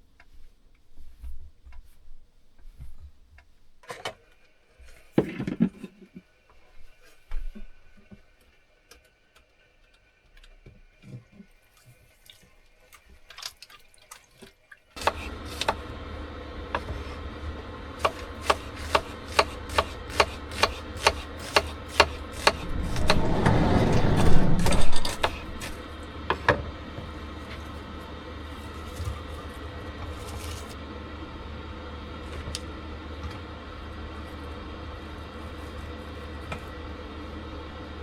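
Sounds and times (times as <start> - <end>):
steady low hum: 15.0 - 38.0.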